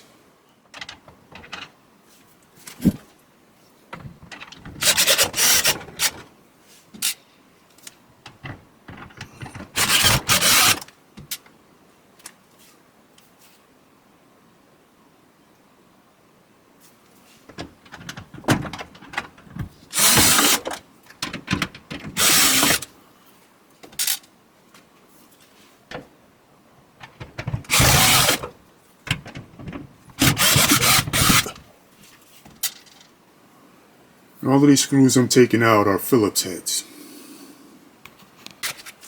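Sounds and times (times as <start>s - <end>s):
small clicks and rattles: 0.6s - 1.8s, 3.9s - 6.3s, 7.0s - 11.6s, 17.5s - 22.9s, 27.0s - 31.6s, 32.5s - 33.2s
power drill-driver running: 9.8s - 10.8s, 22.2s - 22.8s, 27.7s - 28.4s, 30.2s - 31.5s.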